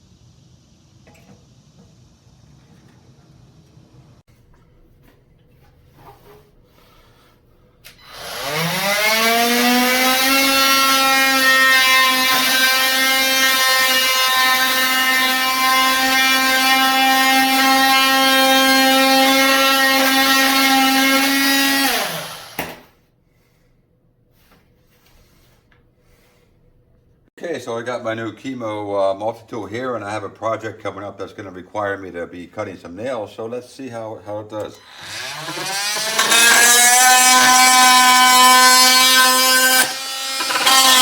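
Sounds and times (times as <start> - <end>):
multi-tool motor whine: 8.0 - 13.3, 34.8 - 41.0.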